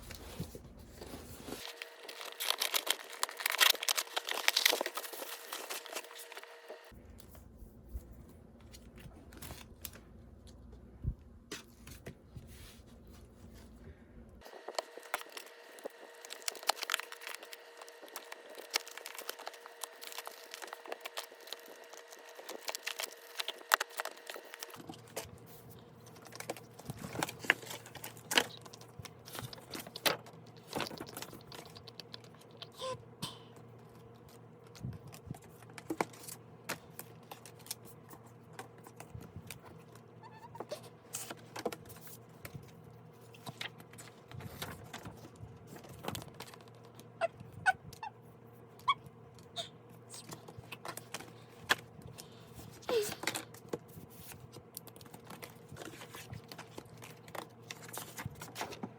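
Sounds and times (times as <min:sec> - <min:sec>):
faint steady hum: 0:00.0 - 0:58.9
packaging clicks and crinkles: 0:00.1 - 0:06.9, 0:14.4 - 0:32.7, 0:50.2 - 0:58.9.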